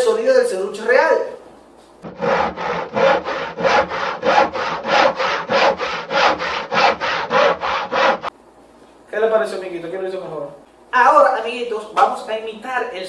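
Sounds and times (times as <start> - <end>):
handsaw cutting wood: 2.0 - 8.3.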